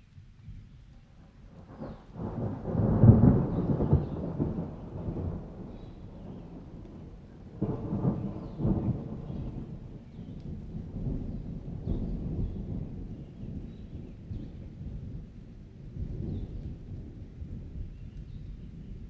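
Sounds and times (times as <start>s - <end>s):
thunder rumbling: 1.5s - 19.0s
heavy rain: 1.6s - 13.6s.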